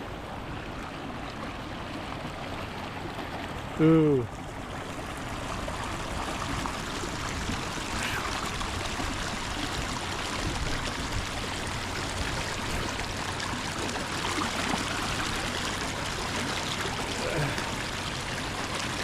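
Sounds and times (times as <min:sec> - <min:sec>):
creek water rushing: 0:00.0 - 0:19.0.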